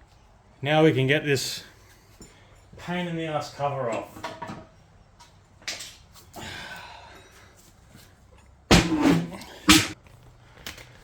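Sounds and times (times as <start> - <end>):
metal clanks and scraping: 3.9 - 4.8.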